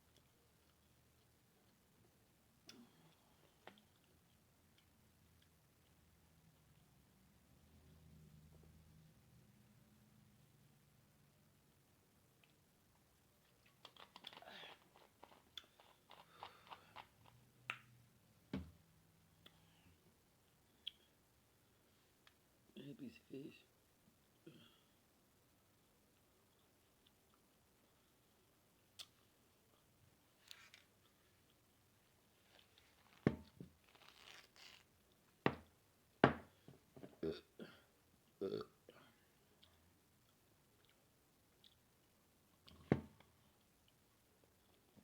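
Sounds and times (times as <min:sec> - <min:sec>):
person chewing food: 0:13.4 - 0:17.8, 0:39.5 - 0:45.0
soft rustle: 0:30.2 - 0:35.2.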